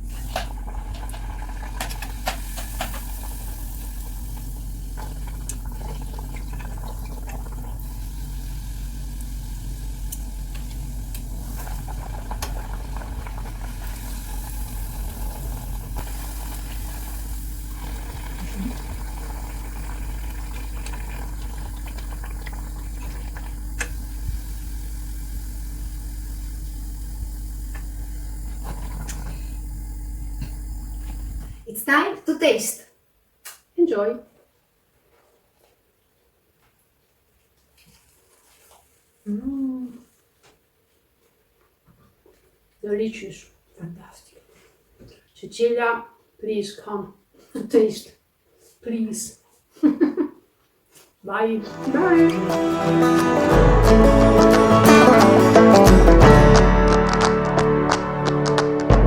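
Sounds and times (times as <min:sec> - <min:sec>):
dough sizzling in hot oil: 0:00.0 - 0:31.6
low hum: 0:00.0 - 0:31.6.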